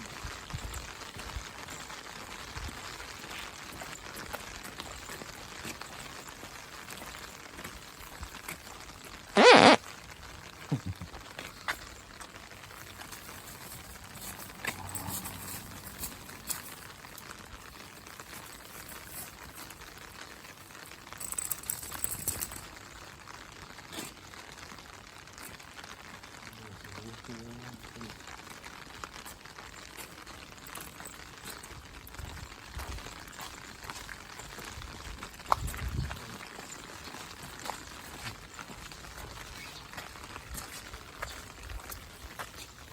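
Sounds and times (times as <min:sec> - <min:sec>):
raindrops ticking: 0:00.0 - 0:42.9
rain hissing: 0:07.2 - 0:30.3.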